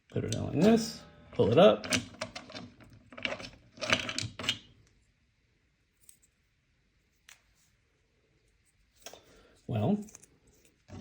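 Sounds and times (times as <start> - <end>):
plastic lock knob rustling and clicking: 1.8 - 4.7.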